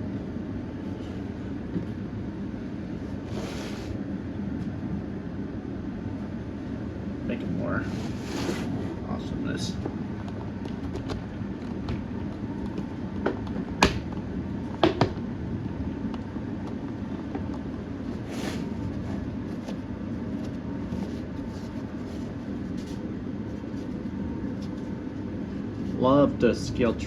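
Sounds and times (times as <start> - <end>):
steady room hum: 0.0 - 27.0.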